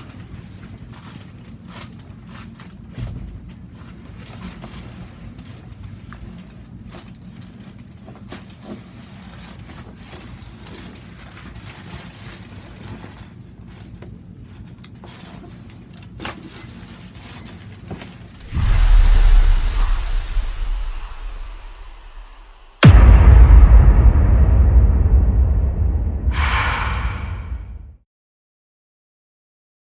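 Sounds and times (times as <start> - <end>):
steady low hum: 18.4 - 27.9.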